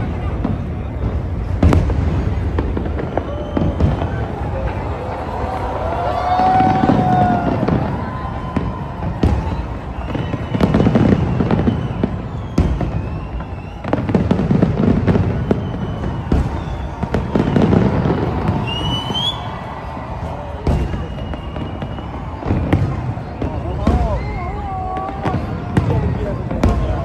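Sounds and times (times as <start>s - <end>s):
fireworks booming: 0.0s - 27.0s
fireworks cracking: 0.0s - 27.0s
fireworks whistling: 0.0s - 27.0s.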